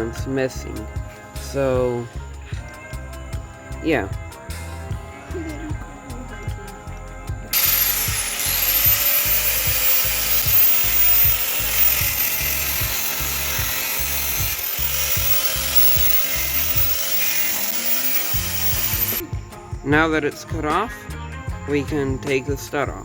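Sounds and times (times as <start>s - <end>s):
background music with beat: 0.0s - 23.0s
power grinder cutting metal: 7.5s - 19.2s.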